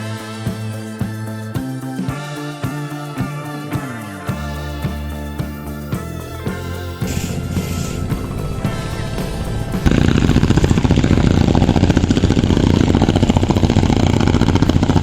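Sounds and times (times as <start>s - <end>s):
background music: 0.0s - 15.0s
engine knocking rapidly: 7.0s - 15.0s.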